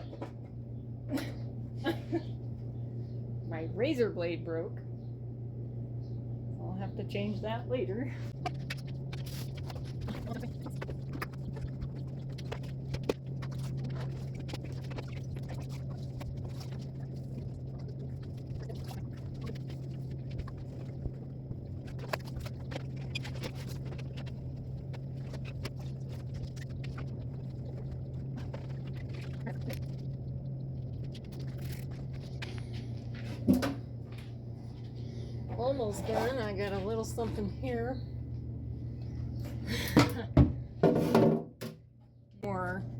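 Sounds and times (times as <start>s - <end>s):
steady low hum: 0.0s - 42.9s
scrubbing and scraping inside fridge: 7.1s - 34.0s, 34.6s - 38.0s, 40.8s - 41.6s.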